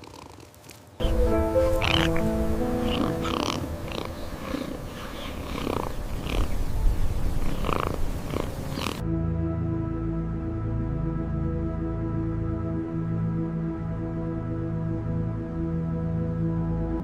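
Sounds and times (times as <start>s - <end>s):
cat purring: 0.0s - 9.0s
soft ambient music: 1.0s - 17.0s.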